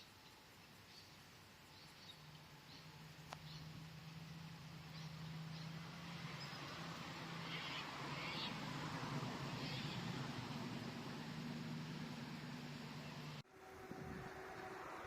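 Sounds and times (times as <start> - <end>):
bird chirps: 0.0 - 8.7.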